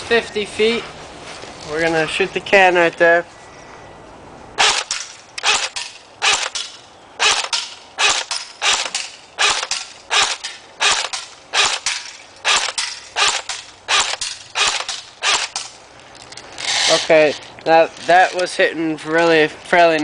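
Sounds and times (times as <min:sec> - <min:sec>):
airsoft gun firing: 0:04.6 - 0:15.7.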